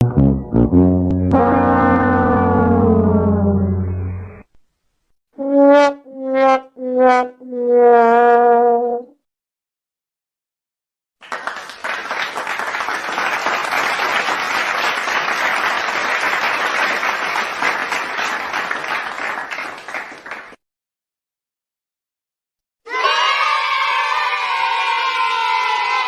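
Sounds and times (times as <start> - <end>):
crowd clapping: 11.2 - 20.6.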